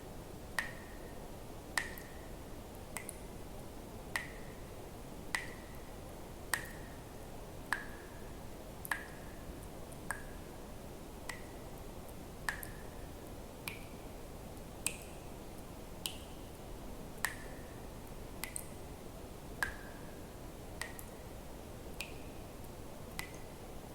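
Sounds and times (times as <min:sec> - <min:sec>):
steady low hiss: 0:00.0 - 0:23.9
water drops plinking into water: 0:00.6 - 0:01.0, 0:01.8 - 0:02.2, 0:03.0 - 0:03.2, 0:04.2 - 0:04.6, 0:05.3 - 0:05.8, 0:06.5 - 0:06.9, 0:08.8 - 0:09.3, 0:10.1 - 0:10.4, 0:11.3 - 0:11.6, 0:12.5 - 0:12.9, 0:17.2 - 0:17.7, 0:18.4 - 0:18.8, 0:20.8 - 0:21.2, 0:23.1 - 0:23.5.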